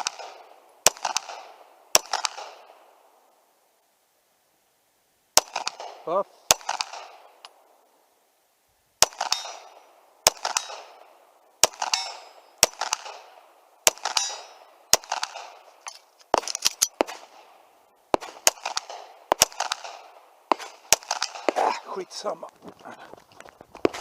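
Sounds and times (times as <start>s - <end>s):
handgun shots with echo: 0.0s - 2.6s, 5.4s - 7.2s, 9.0s - 11.0s, 11.6s - 15.7s, 18.2s - 21.9s.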